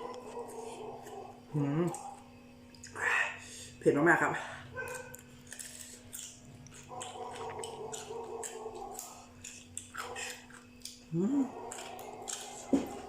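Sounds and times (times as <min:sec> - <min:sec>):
person chewing: 0:04.8 - 0:13.0.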